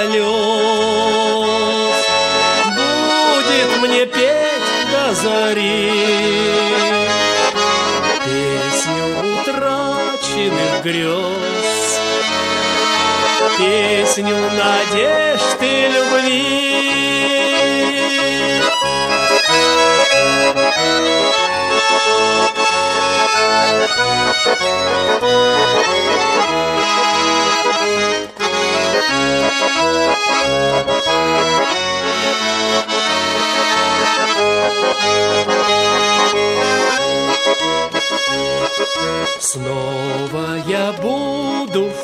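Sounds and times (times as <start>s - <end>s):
accordion melody: 0.0s - 42.0s
bass and chord beat: 17.6s - 39.4s.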